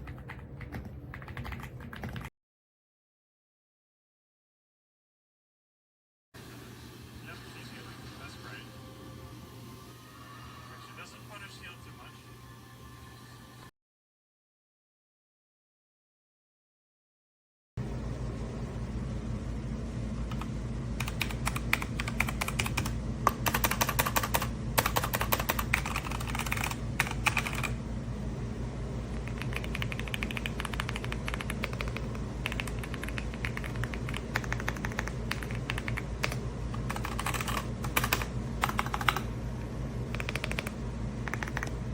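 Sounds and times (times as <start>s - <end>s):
mechanical keyboard typing: 0.0s - 2.3s, 20.3s - 27.7s, 29.2s - 39.3s, 40.1s - 41.8s.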